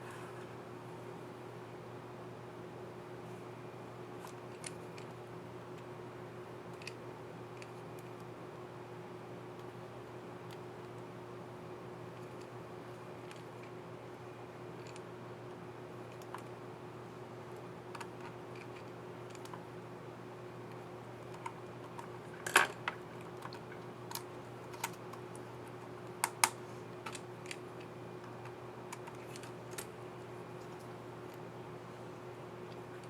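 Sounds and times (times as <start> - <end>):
faint steady hum: 0.0 - 33.0
plastic keyboard keys clicking and snapping: 26.2 - 27.6.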